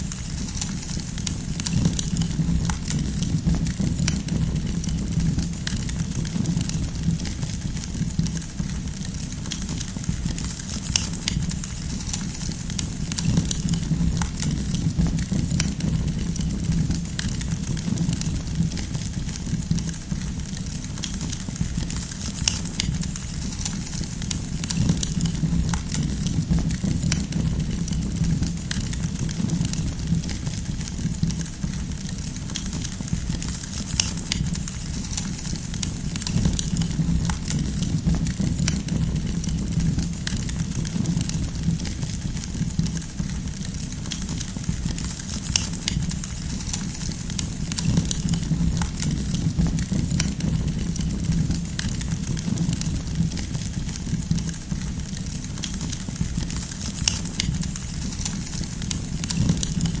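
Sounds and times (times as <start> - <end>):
campfire crackling and popping: 0.0 - 60.0
low rumble: 1.2 - 8.9, 13.0 - 20.6, 24.4 - 32.1, 35.7 - 43.7, 47.3 - 55.2.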